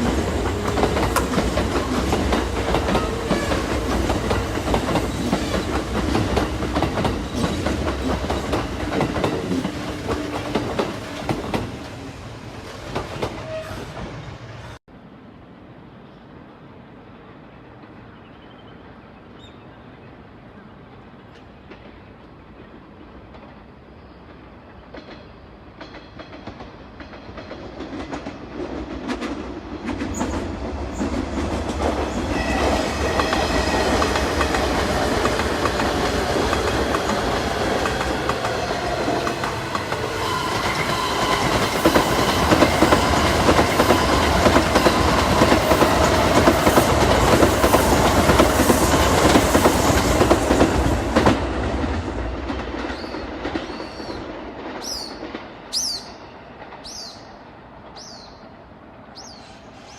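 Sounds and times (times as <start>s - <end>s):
wheels clicking over rail joints: 0.0s - 11.9s
electric train passing: 0.0s - 19.3s, 20.1s - 59.9s.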